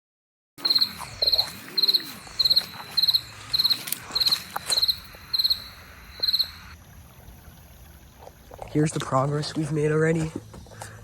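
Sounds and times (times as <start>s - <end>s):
cricket chirping: 0.6s - 9.0s.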